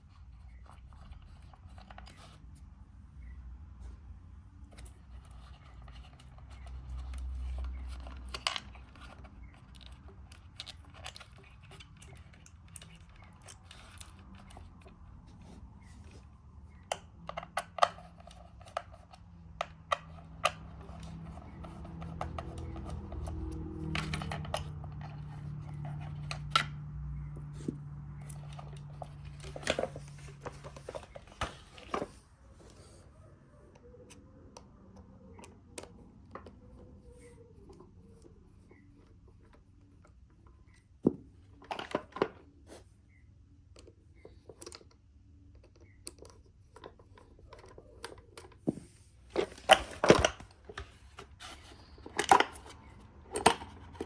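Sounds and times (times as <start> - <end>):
plastic parts clicking and knocking: 4.7 - 15.0, 16.6 - 32.2, 40.7 - 42.4, 43.7 - 54.0.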